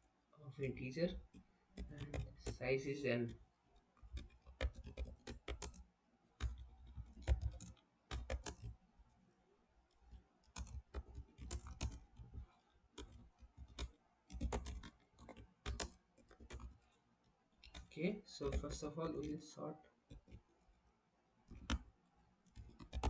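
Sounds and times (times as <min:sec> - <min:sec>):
computer keyboard typing: 0:00.6 - 0:09.2, 0:09.9 - 0:20.8, 0:21.4 - 0:23.0.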